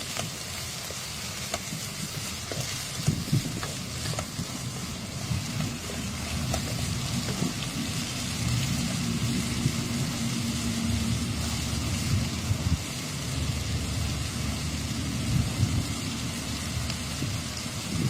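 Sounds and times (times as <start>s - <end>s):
beans sizzling in a pan: 0.0s - 18.0s
stirring clicks: 0.1s - 4.9s
low rumble: 2.1s - 18.0s.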